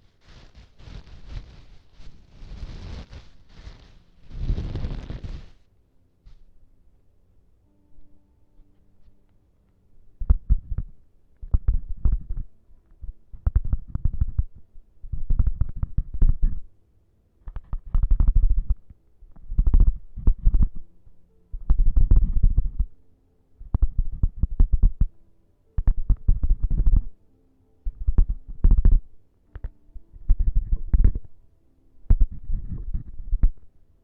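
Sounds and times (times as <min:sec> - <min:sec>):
prop scratching on microphone: 0:00.0 - 0:05.6, 0:17.5 - 0:20.8, 0:21.6 - 0:22.9, 0:30.2 - 0:31.2, 0:32.1 - 0:33.6.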